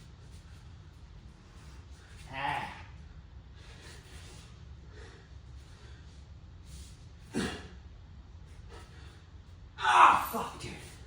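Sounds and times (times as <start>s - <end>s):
man breathing hard: 3.6s - 7.8s.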